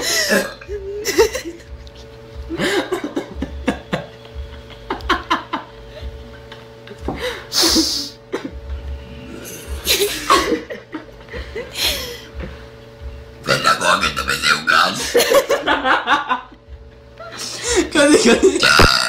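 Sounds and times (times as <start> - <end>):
giggling and breathy laughter: 0.0 - 8.6, 9.7 - 12.3, 15.0 - 18.6.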